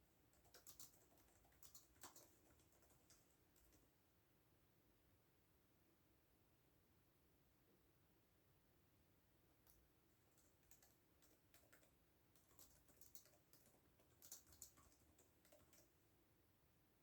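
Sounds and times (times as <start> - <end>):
keyboard typing: 0.2 - 3.9, 9.7 - 16.0.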